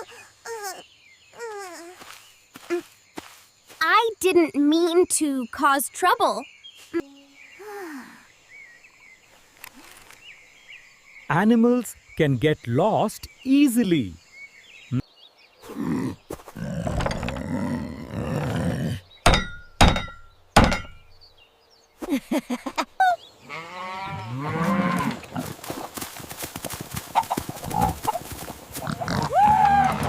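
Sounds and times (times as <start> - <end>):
sharp thumps: 19.2 - 21.2.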